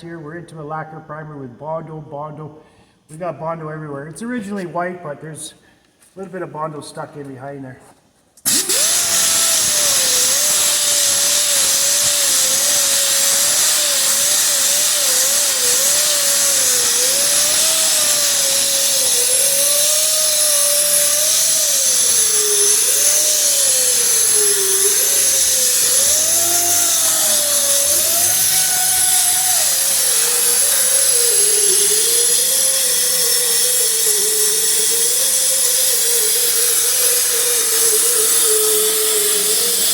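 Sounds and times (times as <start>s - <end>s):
power sander grinding paint: 8.4s - 39.9s.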